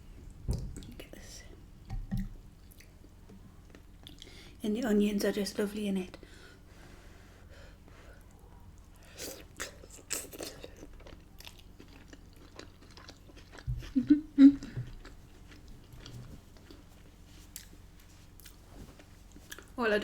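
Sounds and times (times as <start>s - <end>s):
chewing and wet mouth sounds: 2.1s - 4.6s, 8.2s - 19.8s.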